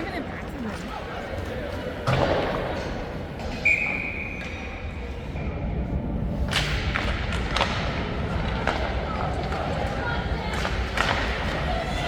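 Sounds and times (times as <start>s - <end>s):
low arena rumble: 0.0s - 12.0s
hockey sticks and puck clacking: 6.4s - 12.0s.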